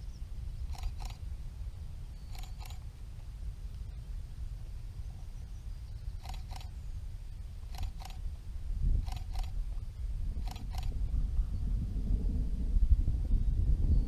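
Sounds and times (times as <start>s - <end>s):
wind rumble on microphone: 0.0s - 14.0s.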